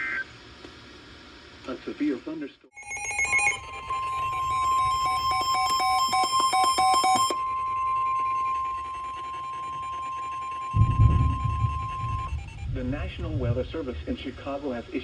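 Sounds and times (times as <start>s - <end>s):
choppy electronic beeping: 2.8s - 12.8s
steady high alert tone: 2.8s - 13.2s.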